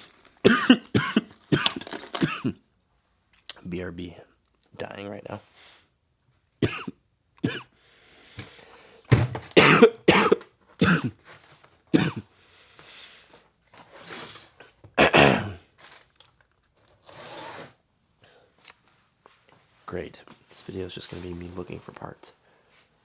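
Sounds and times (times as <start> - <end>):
man clearing his throat: 0.5 - 2.6, 6.6 - 7.7, 9.6 - 11.2, 12.0 - 12.3, 15.0 - 15.6
man coughing: 0.5 - 2.6, 6.6 - 7.7, 9.6 - 11.2, 11.9 - 12.3, 15.0 - 15.6
man drawing breath: 7.8 - 9.1, 12.3 - 13.4.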